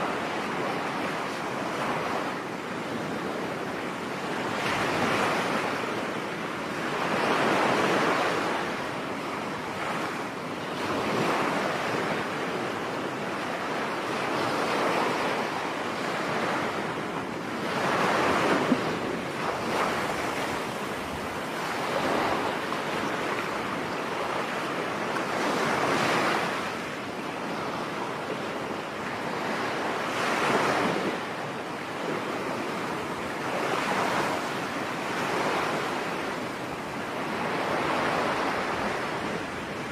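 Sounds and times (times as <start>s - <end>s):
ocean waves breaking on beach: 0.0s - 39.9s.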